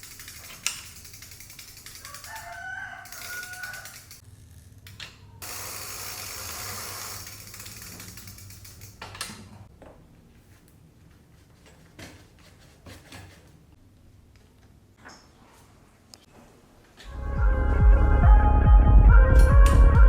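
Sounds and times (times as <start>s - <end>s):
rooster crowing: 2.0s - 4.2s.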